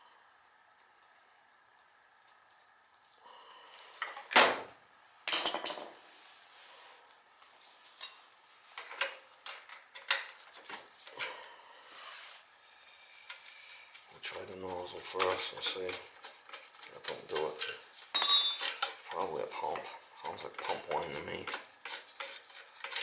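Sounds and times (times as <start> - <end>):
metal tools clanking: 17.4 - 18.9.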